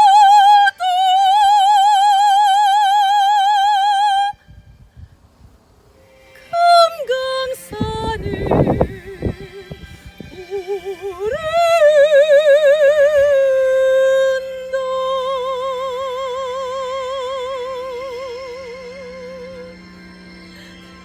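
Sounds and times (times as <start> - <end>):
soprano singing high notes: 6.0 - 21.0.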